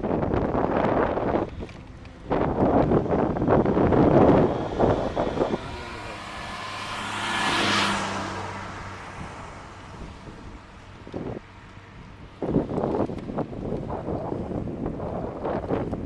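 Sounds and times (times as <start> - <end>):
wind buffeting microphone: 0.0 - 16.0
car passing: 0.8 - 13.8.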